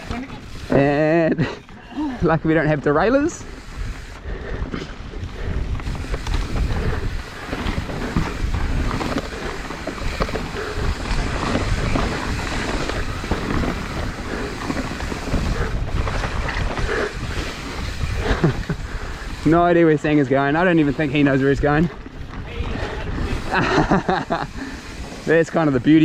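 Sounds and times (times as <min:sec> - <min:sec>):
tyres rumbling over dirt: 0:00.0 - 0:26.0
wind buffeting microphone: 0:01.4 - 0:26.0
bike knocks and rattles: 0:04.6 - 0:19.5.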